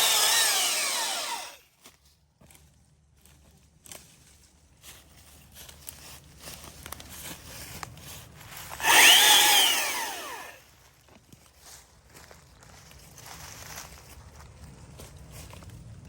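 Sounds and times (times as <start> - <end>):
electric chainsaw motor whine: 0.0 - 1.6, 8.8 - 10.6.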